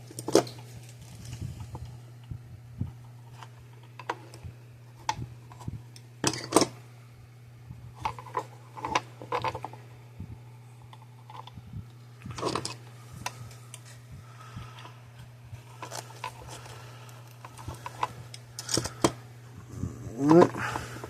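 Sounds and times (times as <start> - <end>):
steady low hum: 0.0 - 21.0
tools and wires clicking: 15.7 - 19.2.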